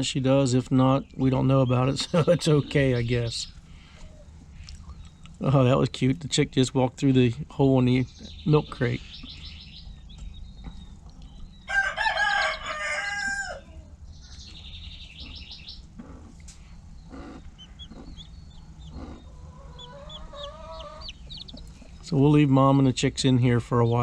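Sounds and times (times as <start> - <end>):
chicks peeping: 0.0 - 24.0
rooster crowing: 11.6 - 14.0, 18.8 - 21.7
rising chicken call: 11.7 - 14.0, 17.1 - 22.0.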